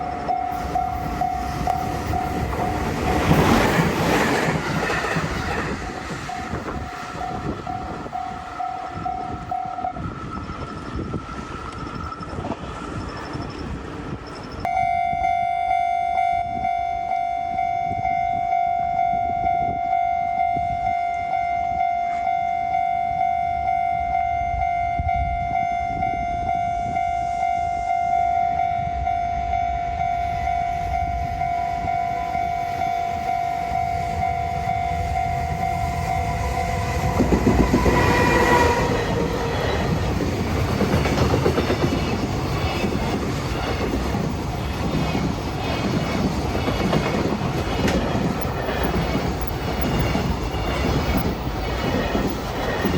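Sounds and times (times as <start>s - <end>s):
level crossing warning bell: 0.0s - 3.5s, 6.0s - 11.1s, 14.6s - 39.7s
train rumbling past: 0.0s - 14.8s, 16.5s - 52.9s.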